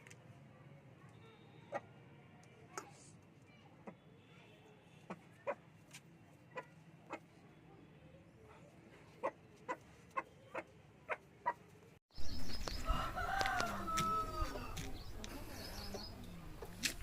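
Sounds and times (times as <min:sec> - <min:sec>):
quiet chicken clicks: 0:12.6 - 0:16.0
rooster crowing: 0:12.8 - 0:14.8.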